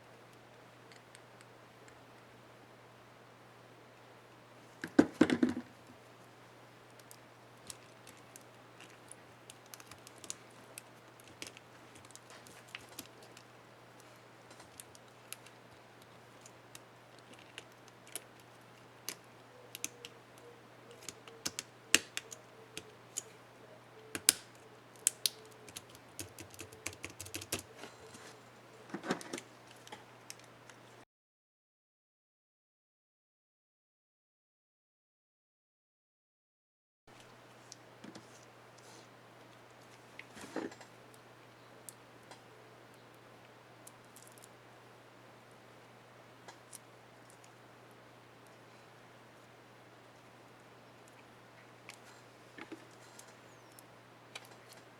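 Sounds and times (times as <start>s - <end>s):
faint steady hum: 0.0s - 31.0s, 37.1s - 54.9s
plastic keyboard clicks: 19.1s - 20.2s, 20.9s - 23.3s, 24.1s - 27.7s.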